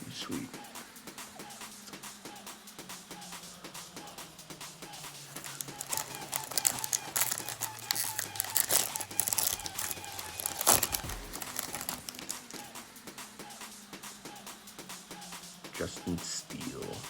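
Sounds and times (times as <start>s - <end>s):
plastic wrapper tearing and crinkling: 5.3s - 12.7s.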